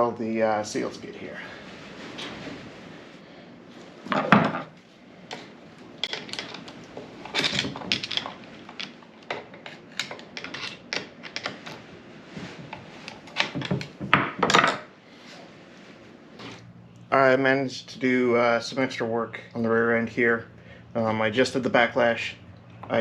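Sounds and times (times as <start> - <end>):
metal parts clinking and clanking: 6.0 - 11.6.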